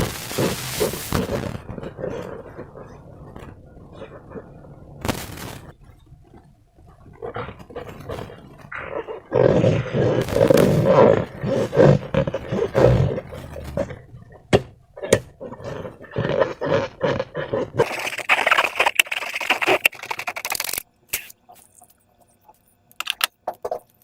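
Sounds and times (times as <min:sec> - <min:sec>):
slime squelching: 0:17.6 - 0:21.9.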